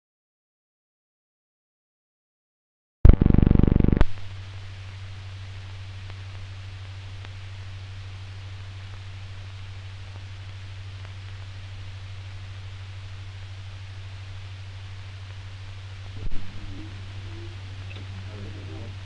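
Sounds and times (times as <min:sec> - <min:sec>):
low hum: 0:03.1 - 0:19.0
steady hiss: 0:04.0 - 0:19.0
faint ticks: 0:05.6 - 0:12.3.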